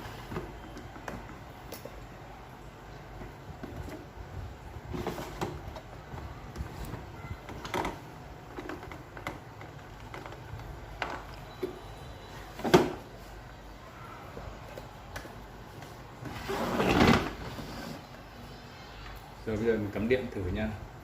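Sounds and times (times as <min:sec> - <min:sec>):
plastic parts clicking and knocking: 0:07.5 - 0:11.8.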